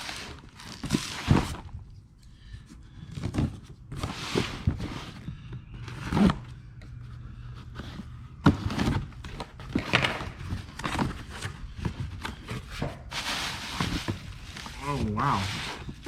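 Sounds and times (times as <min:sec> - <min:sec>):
objects knocking and thunking: 0:07.8 - 0:14.8.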